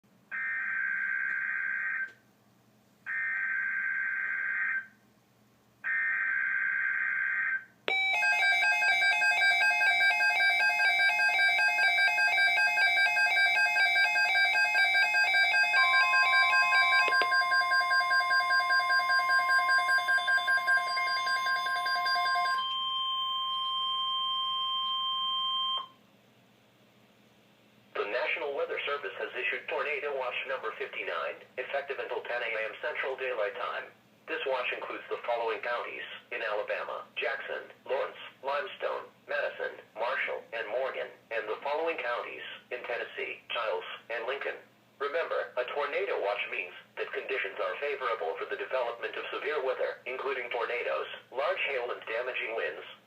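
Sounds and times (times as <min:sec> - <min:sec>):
rapid pulsing electronic alarms: 0:00.3 - 0:02.1, 0:03.1 - 0:04.9, 0:05.9 - 0:25.9
steady alert tone: 0:07.9 - 0:23.0
high steady beep: 0:07.9 - 0:26.0.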